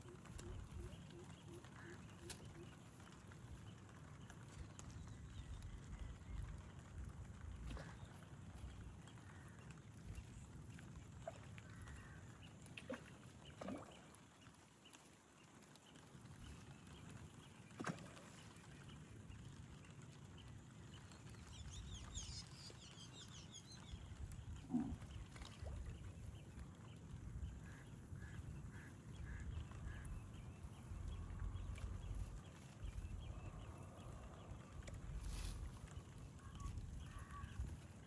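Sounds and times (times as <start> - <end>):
wind rumble on microphone: 0.0 - 12.4, 23.2 - 38.0.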